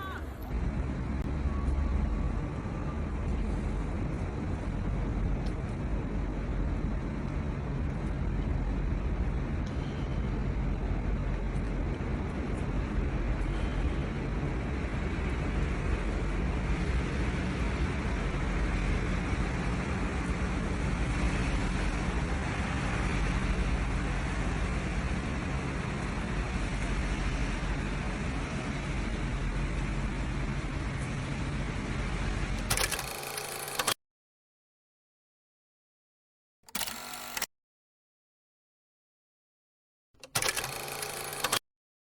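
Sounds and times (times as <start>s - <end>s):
city traffic rumble: 0.0s - 32.8s.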